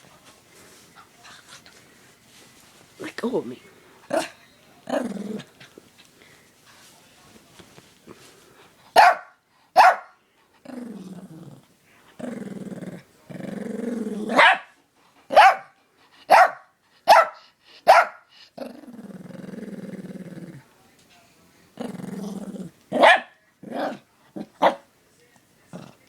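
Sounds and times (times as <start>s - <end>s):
dog growling: 4.1s - 5.8s, 10.6s - 14.4s, 18.6s - 20.7s, 21.8s - 22.9s, 23.6s - 24.6s, 25.7s - 26.0s
dog barking: 9.0s - 10.2s, 14.3s - 14.7s, 15.3s - 15.7s, 16.3s - 18.3s, 23.0s - 24.0s, 24.6s - 24.9s.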